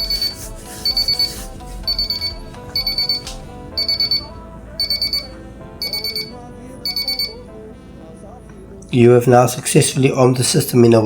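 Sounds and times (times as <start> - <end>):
alarm keypad beeping: 0.0 - 7.4.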